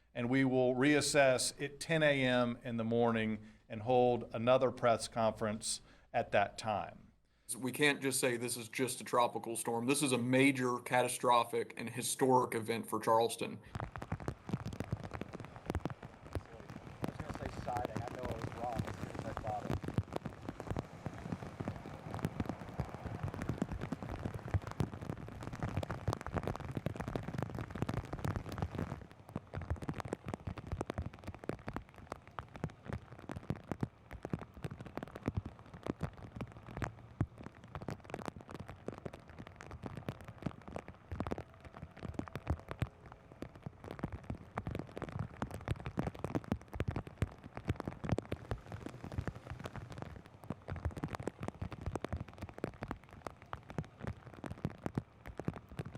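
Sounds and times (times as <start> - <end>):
rain drops striking a surface: 12.1 - 55.9.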